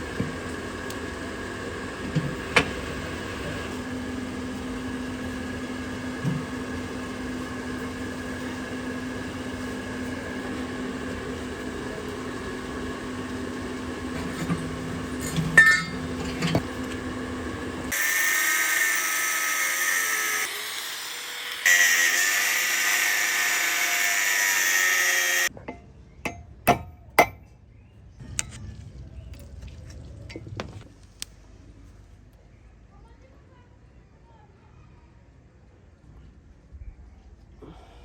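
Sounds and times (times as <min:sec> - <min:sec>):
small motor humming: 0:00.0 - 0:25.5
power tool whirring: 0:13.0 - 0:25.5.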